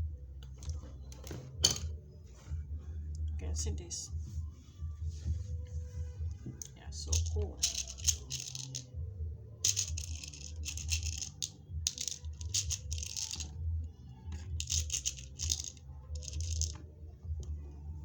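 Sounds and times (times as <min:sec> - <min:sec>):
beads and metal rivets rattling: 0:07.0 - 0:08.9, 0:09.6 - 0:13.6, 0:14.4 - 0:16.8.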